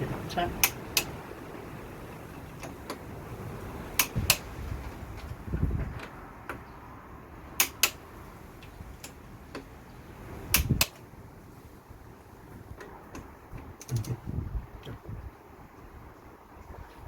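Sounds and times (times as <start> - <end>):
torque wrench clicking: 4.0 - 4.4, 7.6 - 8.0.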